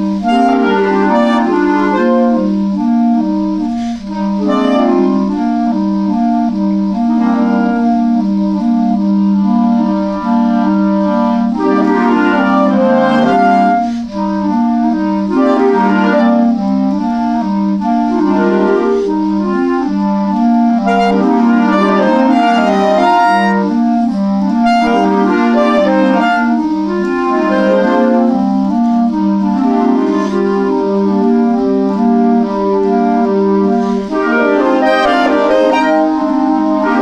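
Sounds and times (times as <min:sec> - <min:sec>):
clarinet playing: 0:00.0 - 0:37.0
repeated low accompaniment notes: 0:00.0 - 0:37.0.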